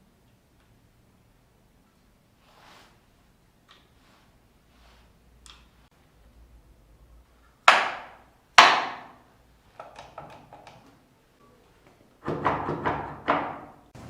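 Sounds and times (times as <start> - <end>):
knocks on wood: 12.2 - 13.8.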